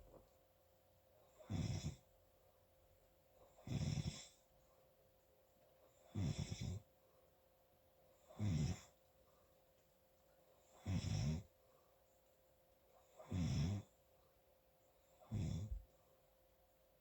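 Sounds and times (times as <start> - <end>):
loud snoring: 1.4 - 2.0, 3.6 - 4.2, 6.2 - 6.8, 8.4 - 8.9, 10.8 - 11.4, 13.2 - 13.8, 15.3 - 15.7
quiet breathing: 10.4 - 16.4.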